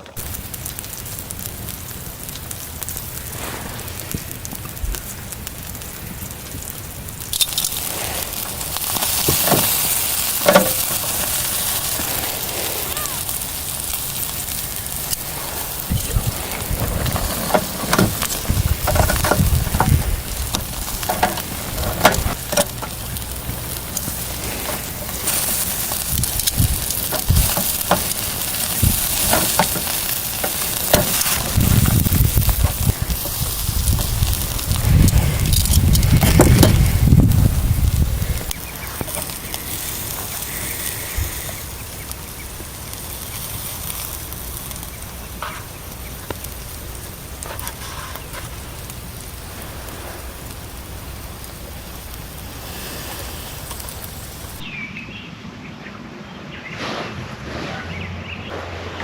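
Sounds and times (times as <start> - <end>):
fat popping and spattering: 0.0 - 54.7
meat sizzling on a grill: 0.0 - 54.8
sharp clicks: 0.1 - 37.3.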